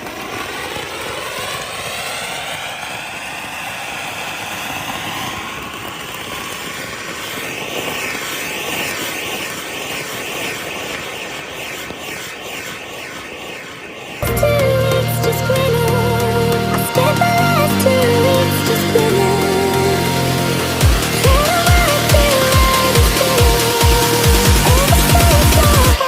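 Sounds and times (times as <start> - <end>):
firecrackers burning with rushing hiss: 0.0 - 15.9, 16.6 - 26.0
music: 14.2 - 26.0.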